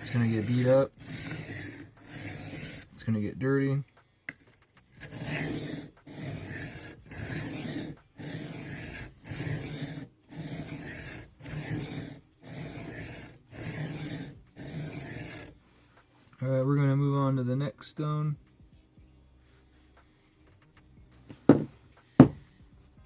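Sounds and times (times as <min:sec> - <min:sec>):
knife scraping on sharpening plate: 0:00.0 - 0:02.9.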